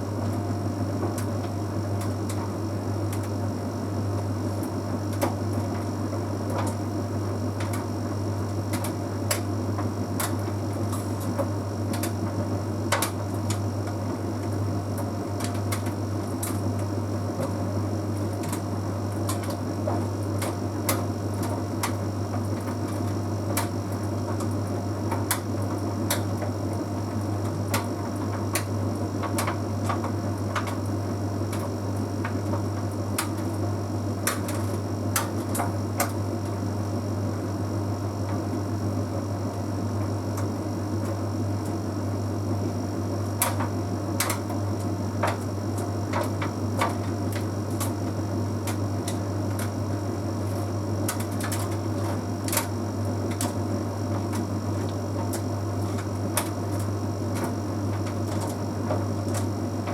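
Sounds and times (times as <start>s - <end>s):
clothes clicking in dryer drum: 15.3s - 36.7s, 43.2s - 59.9s
tumble dryer humming: 40.5s - 59.9s.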